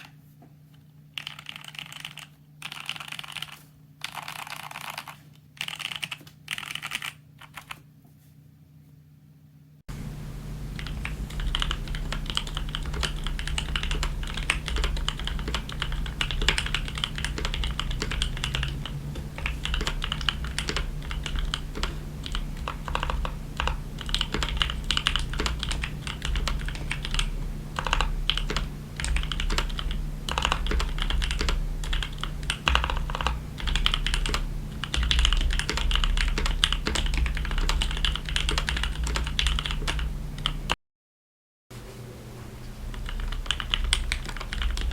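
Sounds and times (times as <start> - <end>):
fast typing on mechanical keyboard: 1.2 - 7.8, 10.8 - 40.8, 42.9 - 44.9.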